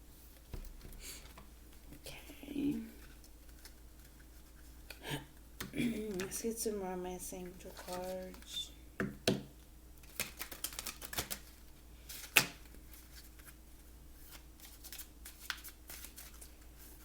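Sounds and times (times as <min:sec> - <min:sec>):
cards being shuffled: 0:03.0 - 0:05.0, 0:07.4 - 0:08.6, 0:10.0 - 0:17.0.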